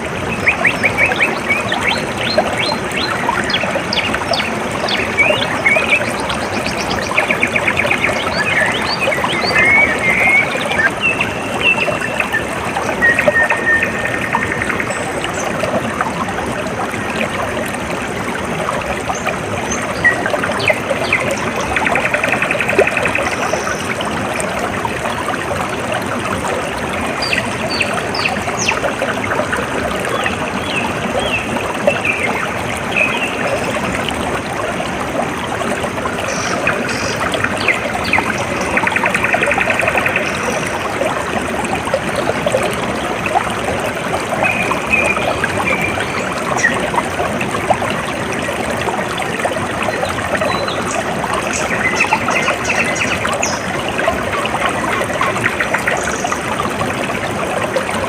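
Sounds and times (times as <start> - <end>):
birds chirping and trilling: 0.0 - 15.5
water trickling and splashing: 0.0 - 58.0.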